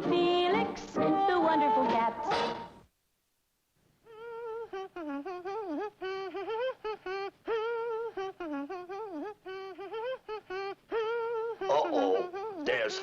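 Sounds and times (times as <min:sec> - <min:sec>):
person humming a tune: 0:04.1 - 0:12.6.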